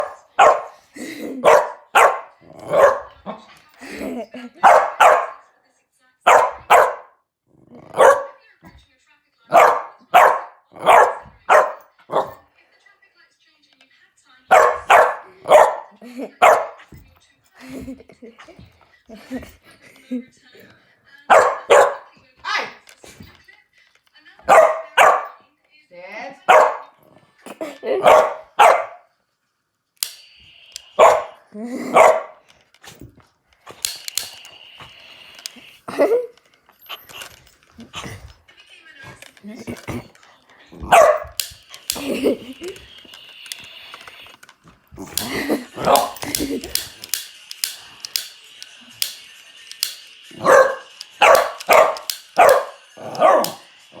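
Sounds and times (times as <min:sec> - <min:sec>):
dog barking: 0:00.0 - 0:00.8, 0:01.4 - 0:03.5, 0:04.6 - 0:05.4, 0:06.3 - 0:07.2, 0:07.9 - 0:08.4, 0:09.5 - 0:12.5, 0:14.5 - 0:16.9, 0:21.3 - 0:22.8, 0:24.5 - 0:25.4, 0:26.5 - 0:27.0, 0:27.9 - 0:29.1, 0:31.0 - 0:32.4, 0:40.8 - 0:41.4, 0:45.8 - 0:46.2, 0:50.4 - 0:53.7
click: 0:30.0 - 0:31.0, 0:32.4 - 0:35.7, 0:41.2 - 0:50.2, 0:50.9 - 0:53.6.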